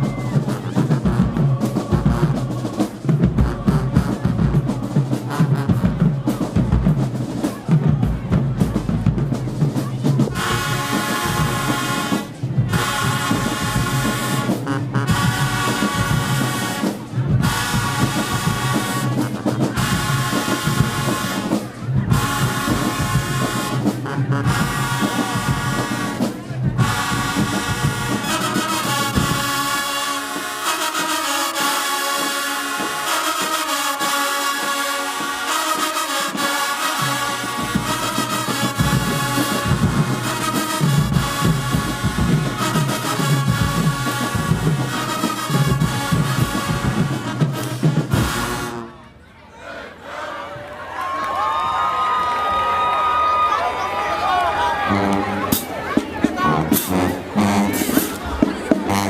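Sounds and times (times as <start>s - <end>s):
marching drumline: 0.0s - 49.0s, 52.4s - 59.0s
brass section playing loud: 0.0s - 49.2s, 54.2s - 59.0s.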